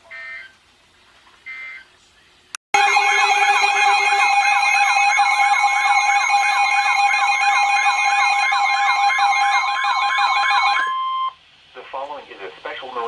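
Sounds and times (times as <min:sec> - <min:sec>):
electronic siren tone sweeping: 0:02.8 - 0:11.0.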